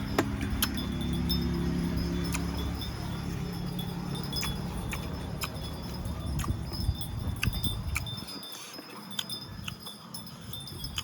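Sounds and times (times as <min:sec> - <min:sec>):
person chewing: 0:00.0 - 0:01.2, 0:02.2 - 0:02.7, 0:04.2 - 0:11.0
faint high chiming: 0:00.0 - 0:11.0
mouth clicks and smacks: 0:04.3 - 0:09.9.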